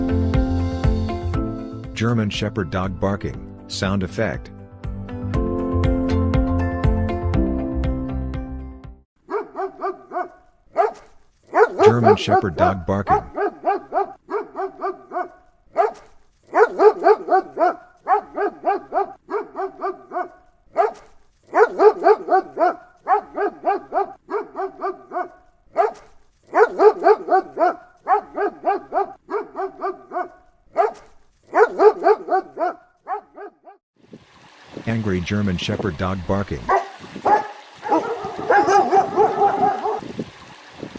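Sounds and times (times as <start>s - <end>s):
dog barking angrily: 9.2s - 33.8s, 36.6s - 40.1s.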